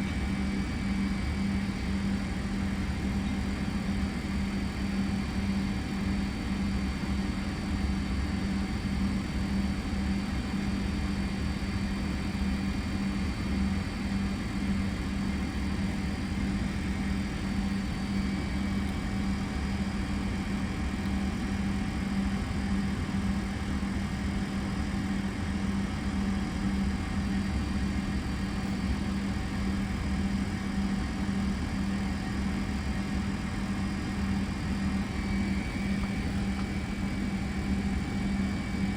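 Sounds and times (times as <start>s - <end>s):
jet engines idling: 13.8s - 38.9s
faint high whines: 31.1s - 38.9s.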